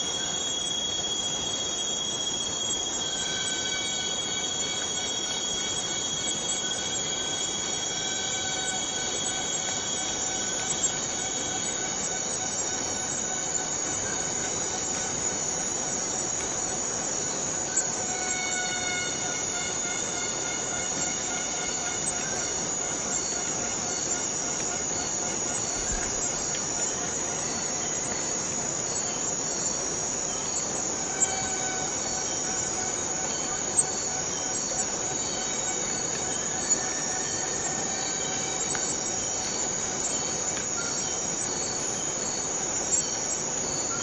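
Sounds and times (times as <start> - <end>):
cicadas buzzing: 0.0 - 44.0
faint ticks: 25.7 - 27.2.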